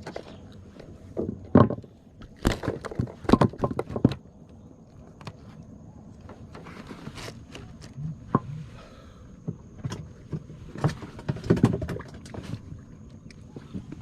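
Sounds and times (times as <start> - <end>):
knocks and clatter in a boat: 0.0 - 4.4, 9.4 - 14.0.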